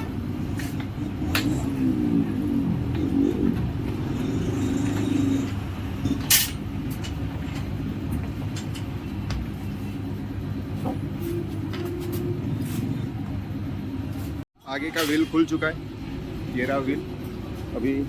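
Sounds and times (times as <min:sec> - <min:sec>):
passing traffic rumble: 0:00.0 - 0:14.4.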